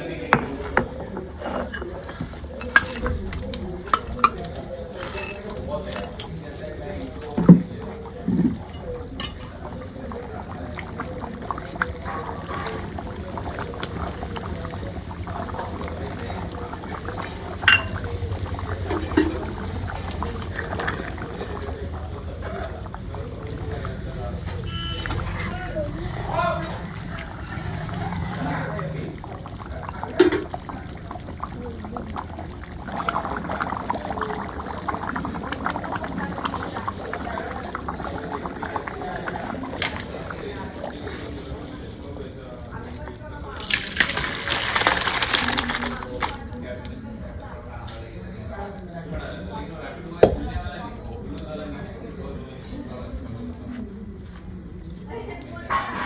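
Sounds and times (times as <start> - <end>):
curry bubbling in a pot: 0.0 - 56.0
water trickling and splashing: 43.6 - 46.8.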